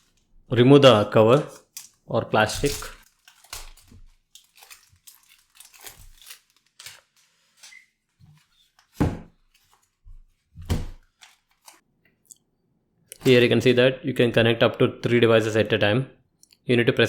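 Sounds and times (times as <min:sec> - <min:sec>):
plastic wrapping crinkling: 0:00.0 - 0:11.8.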